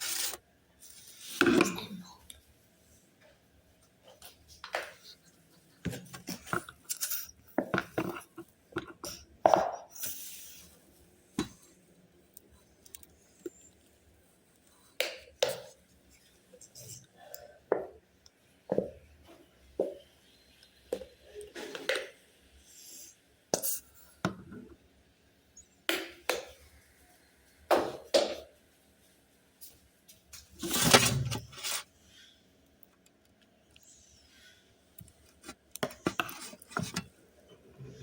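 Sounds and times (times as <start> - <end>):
loud scrape or rustle: 0.0 - 1.4, 30.6 - 31.9
utensil clinking and scraping slime: 0.0 - 2.1, 5.9 - 9.2, 30.6 - 31.9, 35.3 - 37.1.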